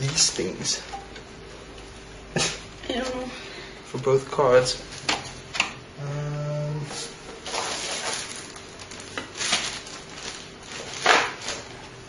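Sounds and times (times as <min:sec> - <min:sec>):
person humming: 0:06.0 - 0:07.1
rustling: 0:07.0 - 0:12.0.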